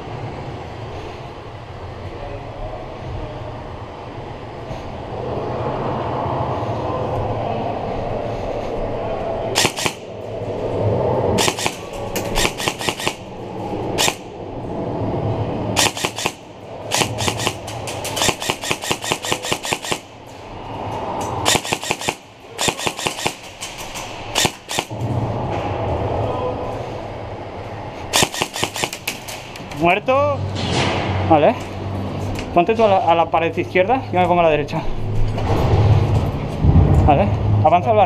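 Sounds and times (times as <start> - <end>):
airsoft rifles firing bursts: 9.6 - 10.1, 11.4 - 13.3, 13.9 - 14.2, 15.8 - 20.1, 21.4 - 25.0, 28.1 - 29.4.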